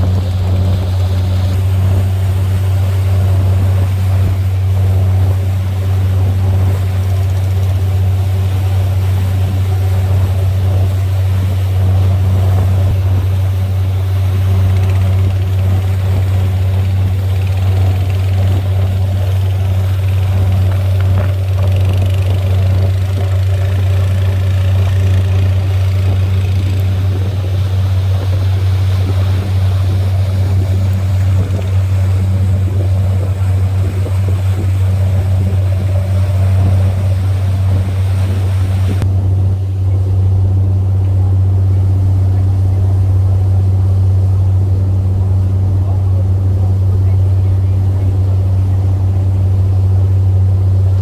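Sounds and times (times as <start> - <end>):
boat engine droning: 0.0 - 51.0.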